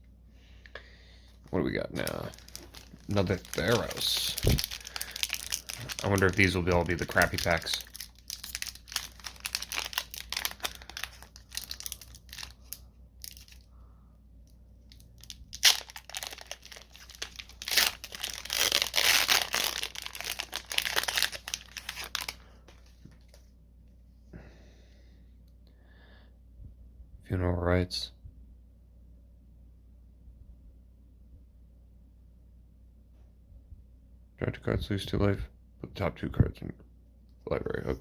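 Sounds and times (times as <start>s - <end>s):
foil wrapper tearing and crinkling: 2.0s - 13.6s, 15.2s - 22.4s.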